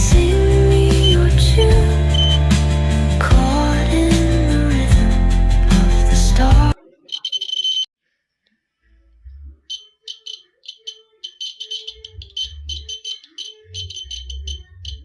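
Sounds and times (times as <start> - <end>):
background music: 0.0 - 6.8
alarm buzzer beeping: 2.1 - 2.4, 7.0 - 7.9, 9.7 - 15.0.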